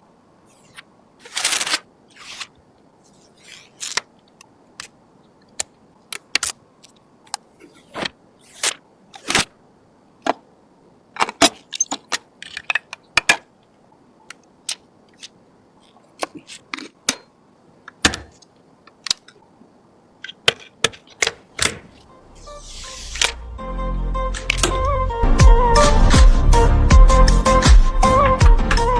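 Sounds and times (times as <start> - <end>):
short rustling scrapes: 0.5 - 4.0, 21.8 - 23.6.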